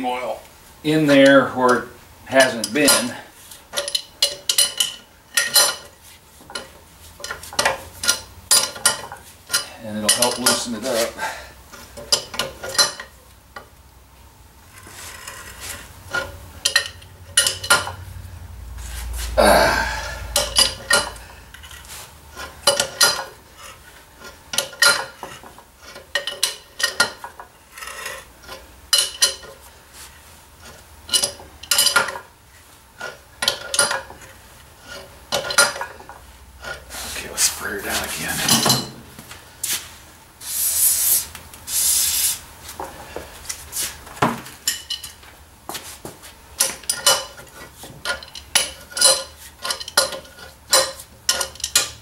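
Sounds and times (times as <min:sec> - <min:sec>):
wrench clinking and scraping on metal: 0:01.1 - 0:13.7, 0:14.7 - 0:18.0, 0:19.9 - 0:32.3, 0:33.0 - 0:39.1, 0:44.6 - 0:45.3, 0:46.6 - 0:52.0.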